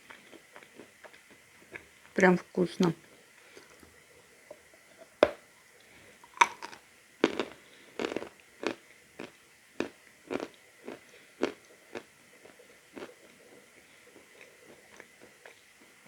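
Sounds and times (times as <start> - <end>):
chewing crunchy chalk: 6.4 - 13.4.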